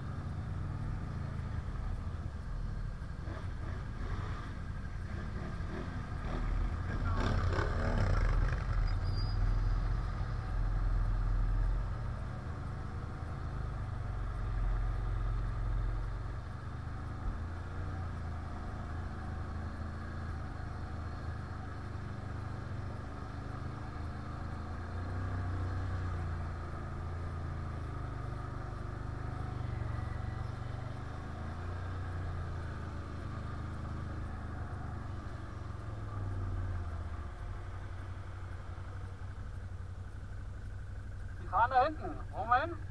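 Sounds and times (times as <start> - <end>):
quad bike engine running: 3.2 - 9.0.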